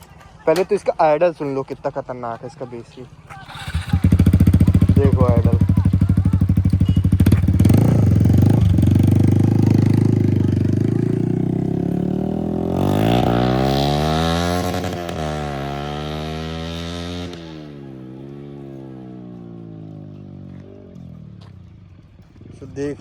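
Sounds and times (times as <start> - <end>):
motorcycle engine idling loudly: 3.4 - 13.2.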